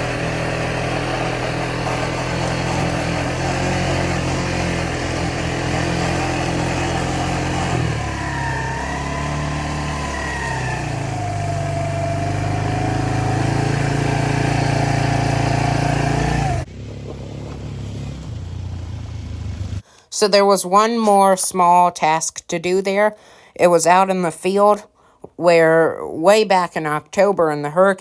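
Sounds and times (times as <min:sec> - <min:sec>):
small vehicle engine whining: 0:00.0 - 0:19.8.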